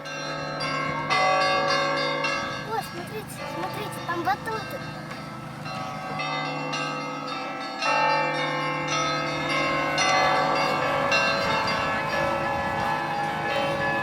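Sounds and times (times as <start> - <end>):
church bells ringing: 0.0 - 14.0.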